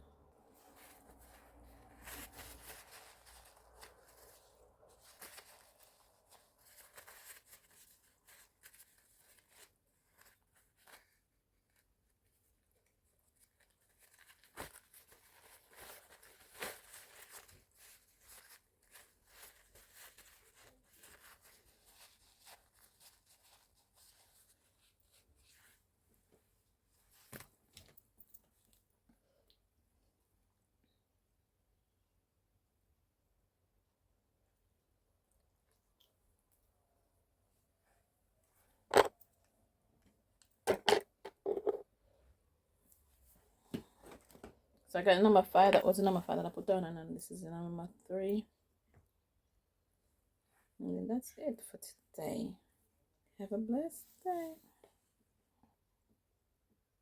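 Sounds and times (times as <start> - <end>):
faint rustling: 0.5 - 28.7.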